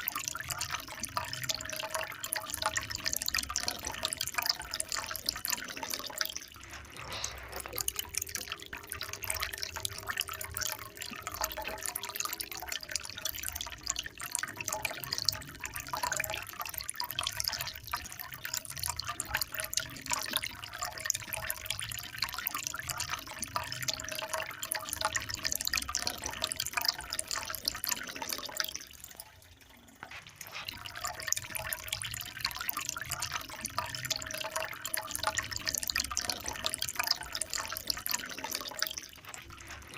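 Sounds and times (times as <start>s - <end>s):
running water splashing: 0.0s - 14.3s, 24.4s - 39.9s.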